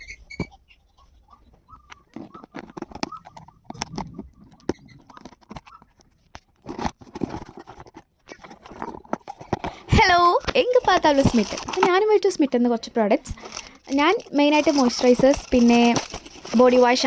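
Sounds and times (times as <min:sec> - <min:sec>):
packaging rustling: 0:02.2 - 0:12.0, 0:13.2 - 0:17.0
packaging taps and clicks: 0:08.6 - 0:12.0, 0:13.3 - 0:17.0.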